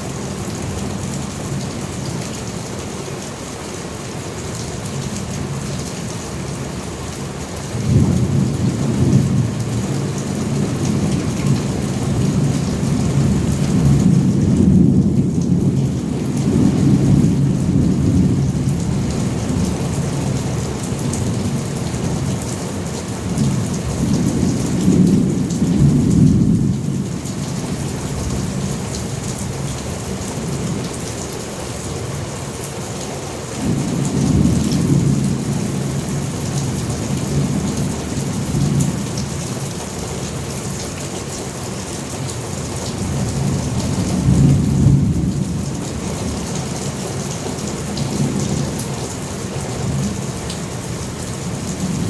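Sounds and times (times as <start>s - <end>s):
heavy rain: 0.0s - 52.0s
low rolling thunder: 7.8s - 22.3s, 23.2s - 28.6s, 33.6s - 39.4s, 42.9s - 46.5s.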